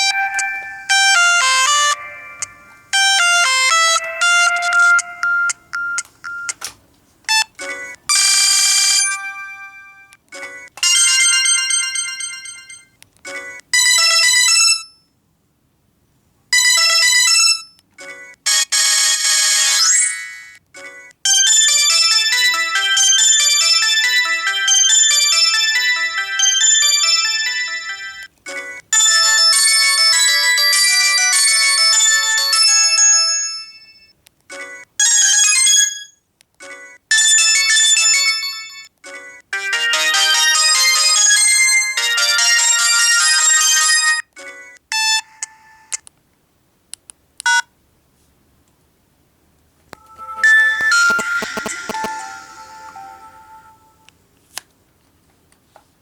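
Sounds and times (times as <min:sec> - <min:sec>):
mobile phone ringtones: 0:00.0 - 0:06.6, 0:07.3 - 0:10.1, 0:39.6 - 0:43.9, 0:50.0 - 0:54.1.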